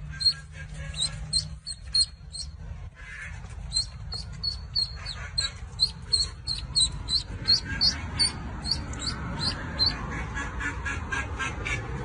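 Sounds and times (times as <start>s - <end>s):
high-pitched animal chirps: 0.1s - 2.6s, 3.7s - 10.0s.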